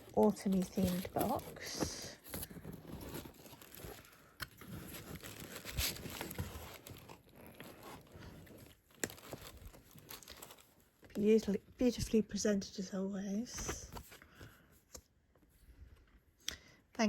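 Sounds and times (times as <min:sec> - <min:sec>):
paper and cardboard rustling: 0:00.0 - 0:12.2.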